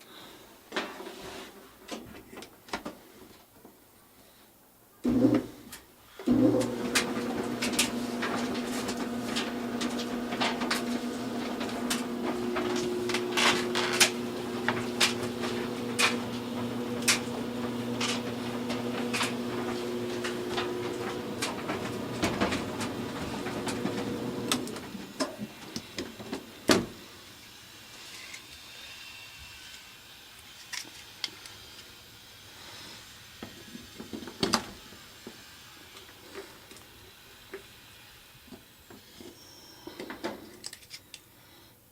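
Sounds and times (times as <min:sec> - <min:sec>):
clothes dryer motor hum: 0:05.0 - 0:27.3
dryer drum clicks and knocks: 0:06.6 - 0:25.4.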